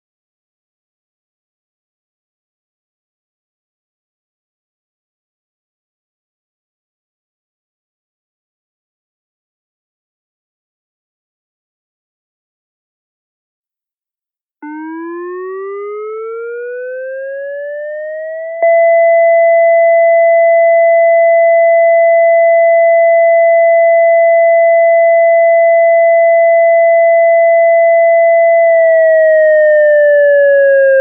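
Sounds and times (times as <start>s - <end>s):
siren tone winding up: 14.6s - 31.0s.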